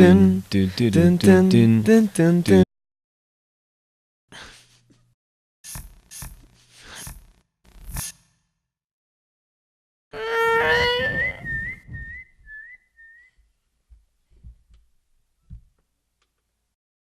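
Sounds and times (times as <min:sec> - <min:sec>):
warbling whistle chirps: 0:11.0 - 0:13.3
soft low thumps: 0:11.3 - 0:12.6, 0:13.9 - 0:14.8.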